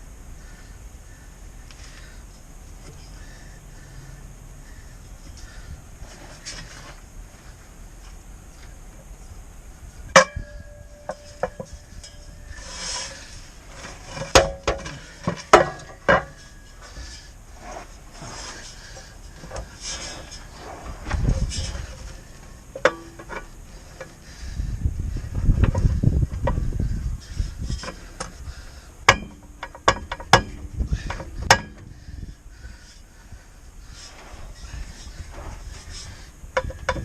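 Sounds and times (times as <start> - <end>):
sharp ringing metal strikes: 10.1 - 12.3
rubbing and scraping: 10.9 - 28.6, 29.2 - 37.0.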